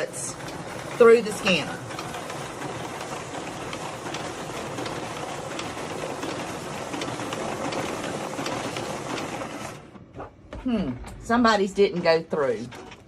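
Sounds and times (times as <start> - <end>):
paper sheets clicking through: 1.4 - 9.8.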